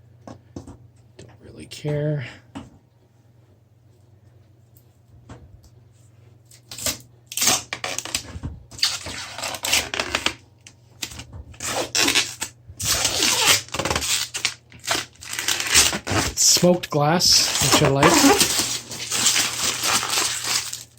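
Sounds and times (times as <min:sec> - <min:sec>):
faint steady hum: 0:00.0 - 0:20.9
plastic film rustling and tearing: 0:06.5 - 0:10.4, 0:11.0 - 0:20.9.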